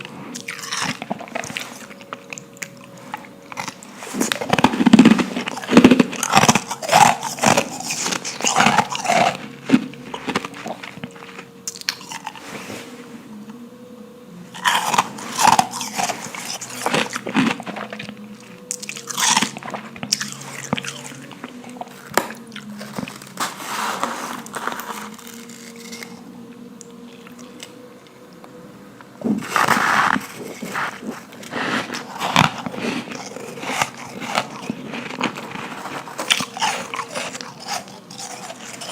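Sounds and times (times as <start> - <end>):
biting and chewing ice: 0.0 - 12.5, 14.5 - 26.2, 29.3 - 38.9.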